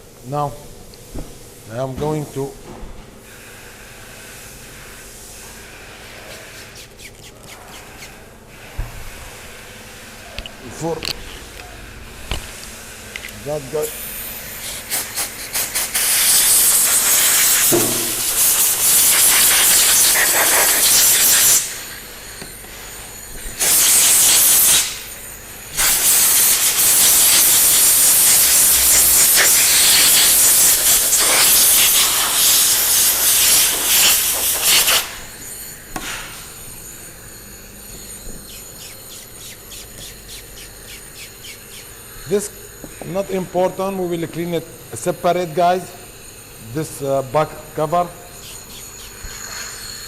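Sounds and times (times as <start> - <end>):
pressure jet hissing: 8.6 - 42.7, 45.9 - 50.0.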